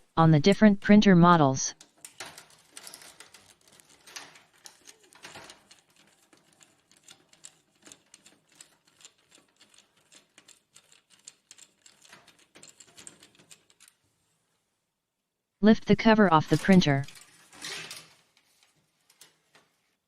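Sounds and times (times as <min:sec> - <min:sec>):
scraping rustles: 0:17.1 - 0:20.0.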